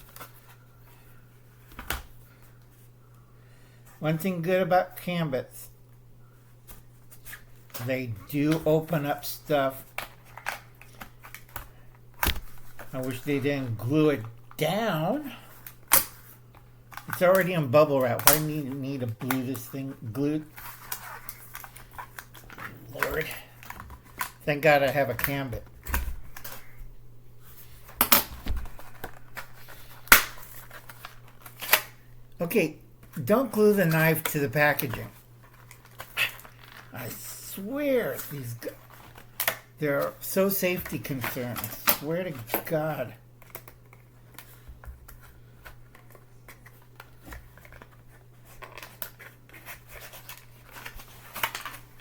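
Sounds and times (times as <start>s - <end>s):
plastic packaging crinkling: 34.0s - 37.2s.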